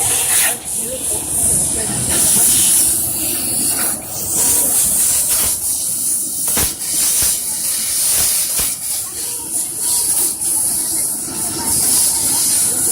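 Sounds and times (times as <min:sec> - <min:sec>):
laser cutter hissing: 0:00.0 - 0:12.9
sharp knock: 0:06.5 - 0:07.4.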